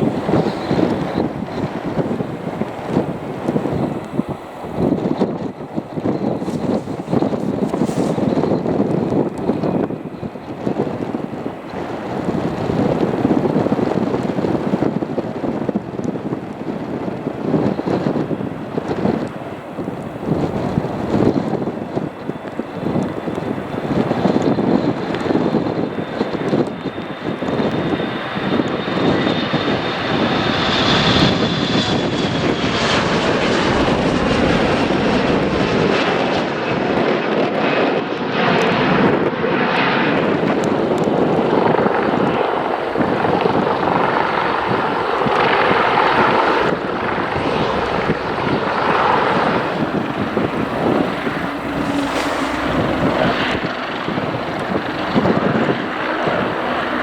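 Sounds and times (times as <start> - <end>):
aircraft engines passing: 0.0 - 57.0
high whine: 40.4 - 57.0.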